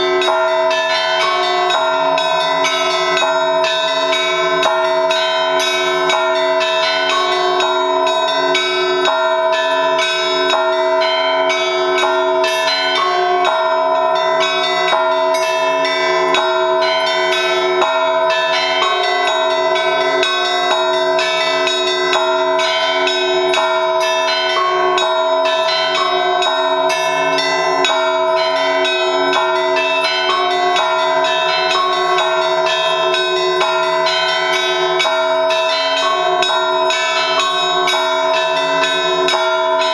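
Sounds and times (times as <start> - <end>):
large bells ringing: 0.0 - 39.9
small bells chiming rapidly: 0.0 - 39.9.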